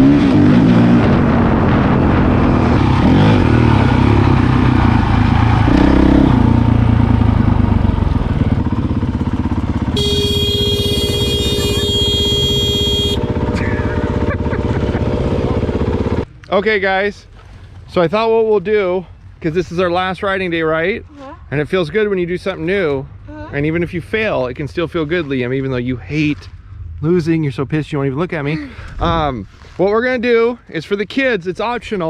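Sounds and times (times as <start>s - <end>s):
motorcycle engine revving: 2.6s - 16.2s.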